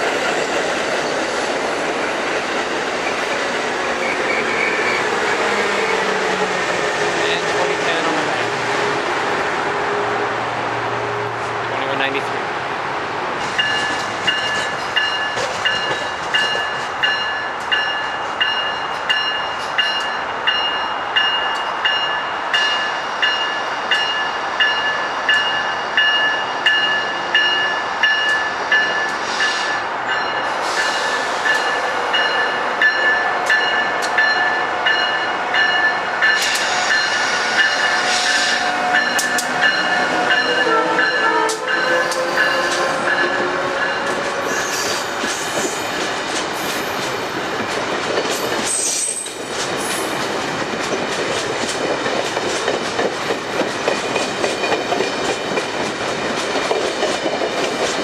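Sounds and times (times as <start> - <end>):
train rumble: 0.0 - 58.0
train warning bell ringing: 13.6 - 44.8.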